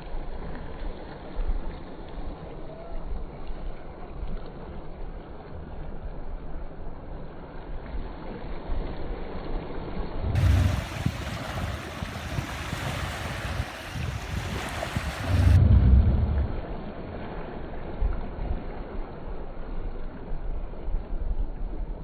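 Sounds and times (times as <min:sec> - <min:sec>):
sea waves washing in: 0:08.1 - 0:20.3
wind buffeting microphone: 0:10.2 - 0:16.9.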